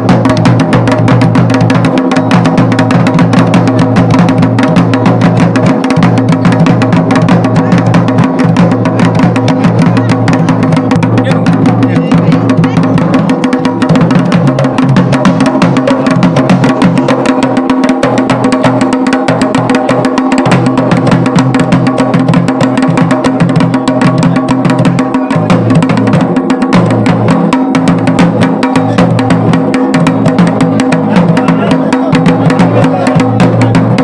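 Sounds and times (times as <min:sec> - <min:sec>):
drum played with fast strokes: 0:00.0 - 0:34.0.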